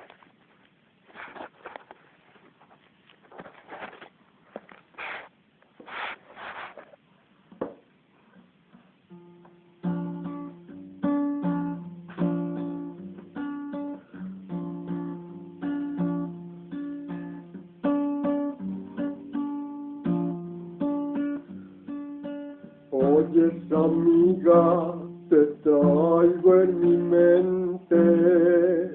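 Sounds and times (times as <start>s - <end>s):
acoustic guitar strumming: 9.1s - 28.9s.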